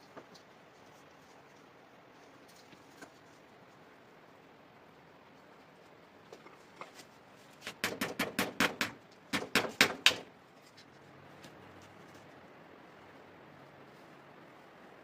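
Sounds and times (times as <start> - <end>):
sharp knocks: 7.6 - 10.3.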